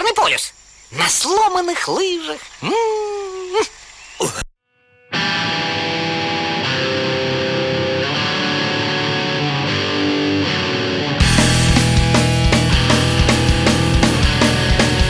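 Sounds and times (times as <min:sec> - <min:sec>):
distorted electric guitar chords: 0:05.0 - 0:15.0
rock band with drums: 0:05.2 - 0:15.0.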